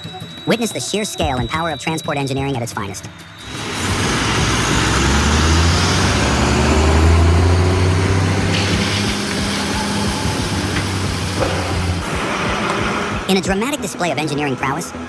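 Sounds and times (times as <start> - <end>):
truck engine droning: 3.2 - 13.6.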